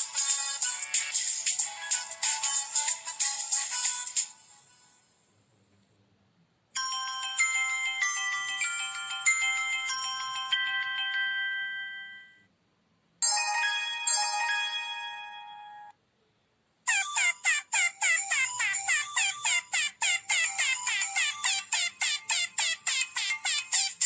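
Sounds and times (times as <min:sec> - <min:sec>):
bell-like phone ringtone: 0:06.8 - 0:12.5, 0:13.2 - 0:15.9, 0:16.9 - 0:24.0.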